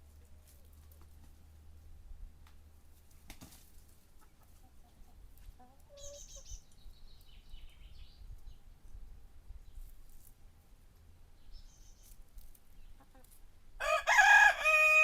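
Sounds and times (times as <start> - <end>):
chickens clucking: 2.8 - 9.0, 11.7 - 15.0
chickens chirping: 2.8 - 15.0.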